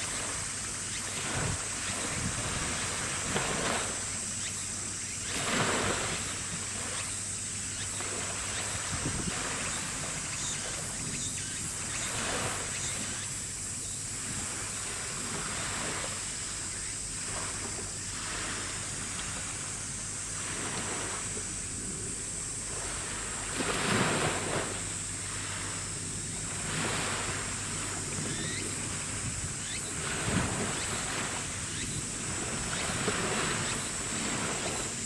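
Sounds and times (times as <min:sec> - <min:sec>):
wind on microphone: 0:00.0 - 0:04.1, 0:07.9 - 0:13.3, 0:23.6 - 0:35.0
sea waves splashing: 0:00.0 - 0:22.0, 0:22.6 - 0:35.0
steady low hum: 0:00.0 - 0:35.0.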